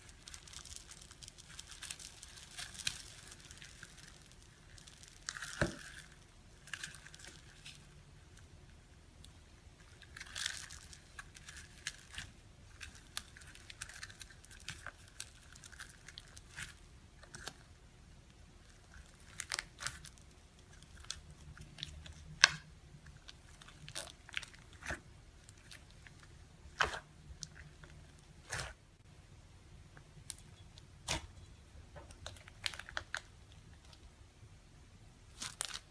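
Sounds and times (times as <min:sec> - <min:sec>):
slime crackling and popping: 0:00.0 - 0:29.1, 0:32.0 - 0:34.1, 0:35.3 - 0:35.9.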